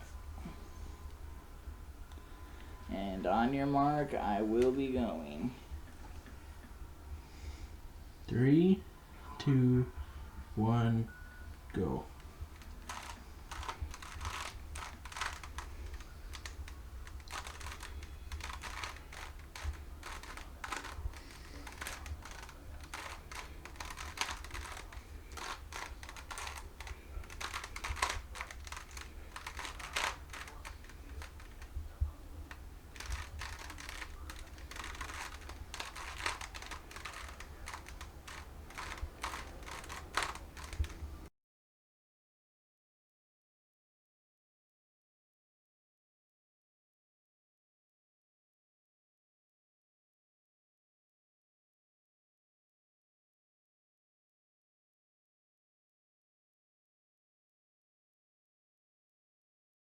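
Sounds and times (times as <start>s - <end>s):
plastic puzzle cube clicking: 12.5s - 41.2s.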